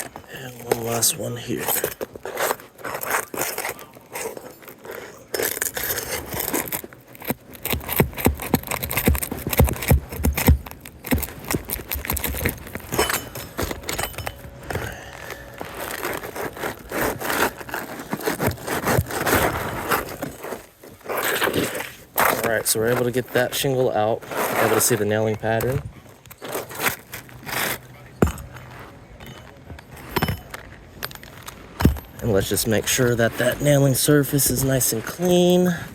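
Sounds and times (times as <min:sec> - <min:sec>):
shingle scraping against shingle: 0:00.0 - 0:35.9
heavier thumps: 0:28.2 - 0:29.4, 0:31.8 - 0:32.2.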